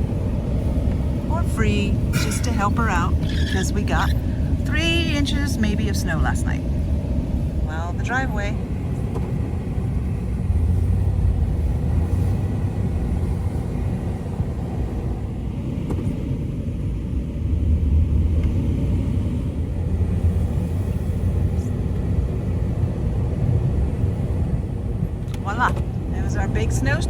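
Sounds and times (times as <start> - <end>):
vehicle engine and road rumble: 0.0 - 27.0.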